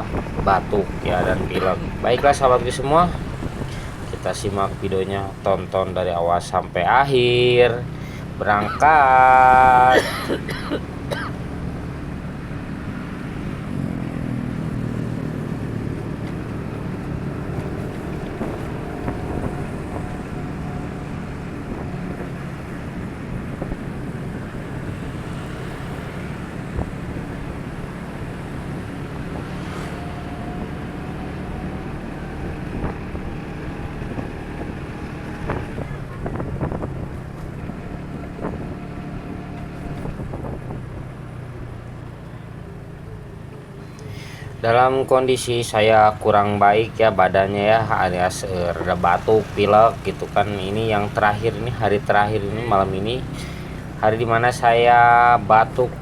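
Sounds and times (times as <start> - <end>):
wind buffeting microphone: 0.0 - 9.9, 11.0 - 43.3
motorcycle engine running: 0.0 - 44.6, 47.7 - 56.0.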